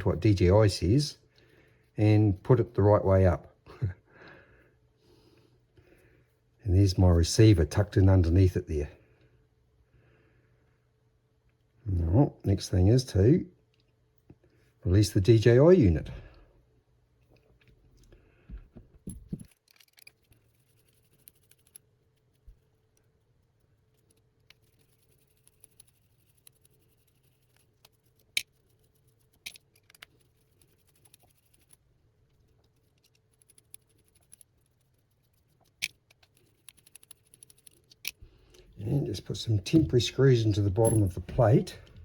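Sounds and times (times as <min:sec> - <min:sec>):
small tools clicking on screws: 0:29.3 - 0:31.8, 0:35.6 - 0:38.2.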